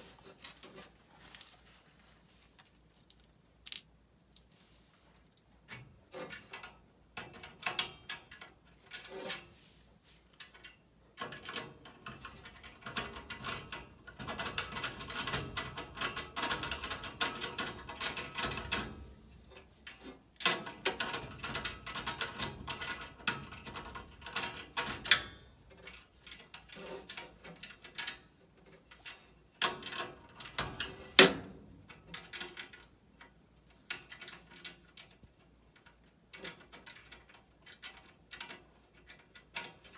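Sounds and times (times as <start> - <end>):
metal parts rattling: 10.4 - 32.9.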